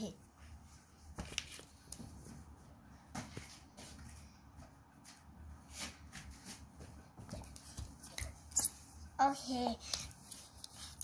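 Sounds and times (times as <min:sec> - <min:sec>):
pencil and paper handling: 0:01.0 - 0:02.2.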